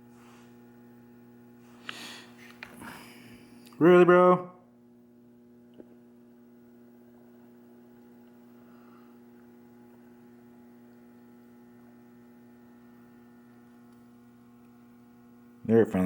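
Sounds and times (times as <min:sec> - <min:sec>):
faint electrical mains hum: 0:00.0 - 0:16.0.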